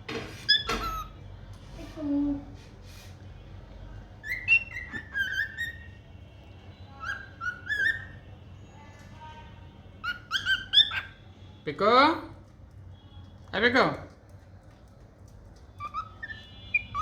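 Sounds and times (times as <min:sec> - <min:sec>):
cockatiel chirping whistled calls: 0:00.5 - 0:01.1, 0:04.2 - 0:05.9, 0:07.0 - 0:08.2, 0:10.0 - 0:11.2, 0:15.8 - 0:17.0.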